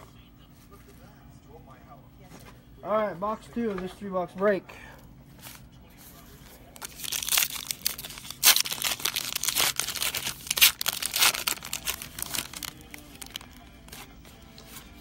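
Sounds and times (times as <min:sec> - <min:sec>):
packaging tearing and crinkling: 0:06.8 - 0:14.2.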